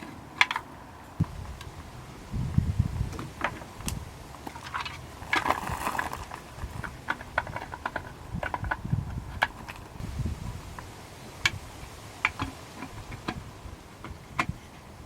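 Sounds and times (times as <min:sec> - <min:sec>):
scraping rustle: 0:02.6 - 0:10.9
hand tools clicking and tapping: 0:06.8 - 0:10.0, 0:12.2 - 0:13.4.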